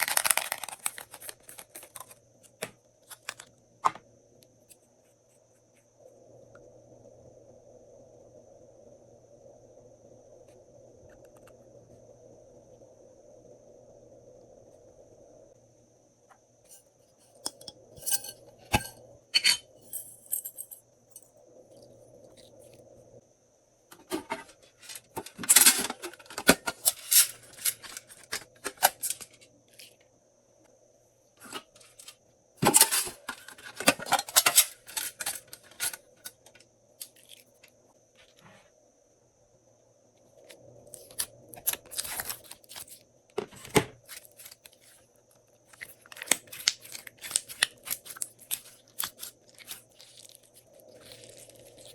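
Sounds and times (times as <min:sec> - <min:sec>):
slime clicking and crackling: 0:45.8 - 0:51.9.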